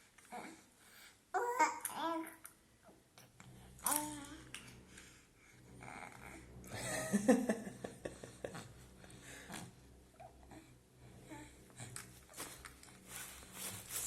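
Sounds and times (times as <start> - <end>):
baby babbling: 1.4 - 2.4.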